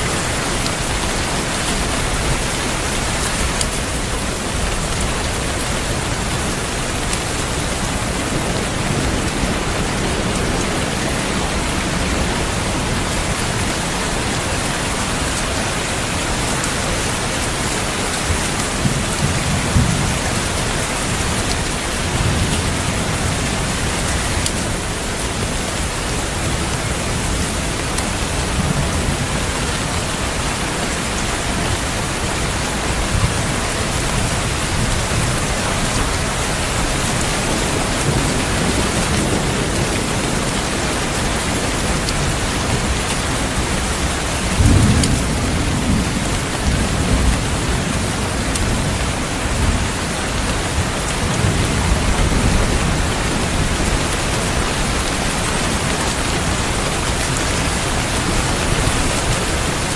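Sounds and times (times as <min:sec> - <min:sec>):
heavy rain: 0:00.0 - 0:59.9
low thunder rumbling: 0:00.1 - 0:59.9.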